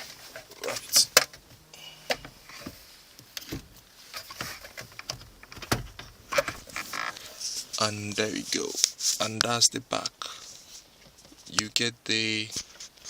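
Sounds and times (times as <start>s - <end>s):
hard plastic clicks and knocks: 4.3s - 6.7s.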